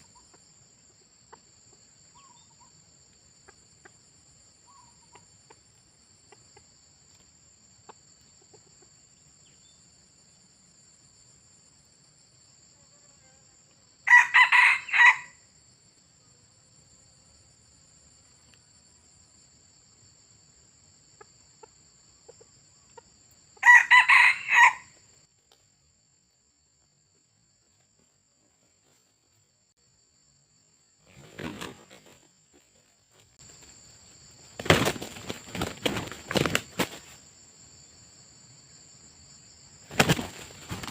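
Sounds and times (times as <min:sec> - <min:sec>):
high insect drone: 0:00.0 - 0:40.9
junglefowl crowing: 0:14.0 - 0:15.4, 0:23.6 - 0:25.0.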